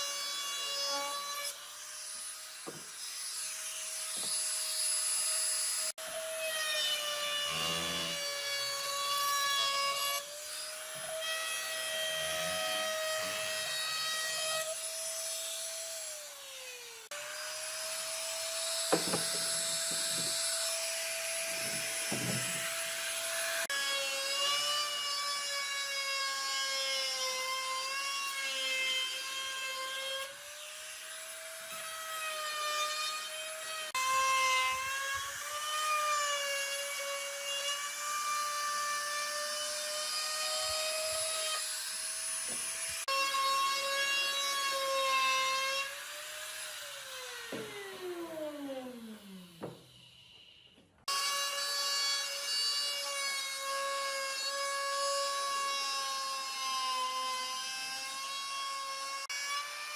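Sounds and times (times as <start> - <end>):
power tool whining: 0.0 - 25.0
wood scraping: 6.9 - 9.7.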